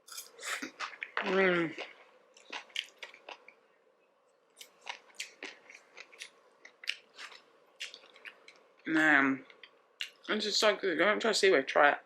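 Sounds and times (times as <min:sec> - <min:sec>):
chewing with wet clicks: 0:00.6 - 0:03.6, 0:04.6 - 0:08.8, 0:09.4 - 0:10.3.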